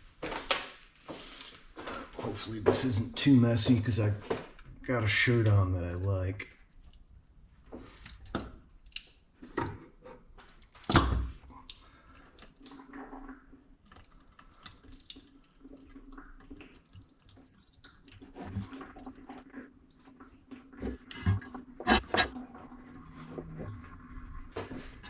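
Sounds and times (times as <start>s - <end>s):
oil dripping: 5.8s - 21.1s.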